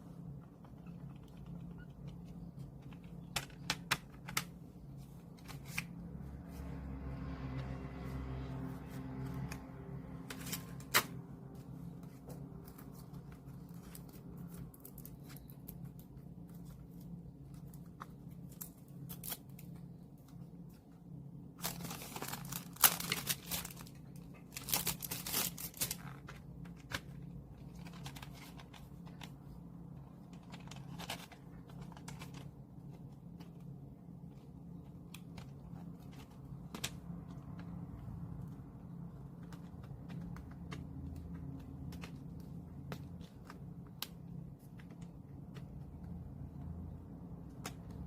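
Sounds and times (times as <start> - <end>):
plastic wrap tearing and crinkling: 21.6 - 26.3
packaging clicks and rustling: 21.6 - 29.4, 30.0 - 33.7, 34.9 - 45.8.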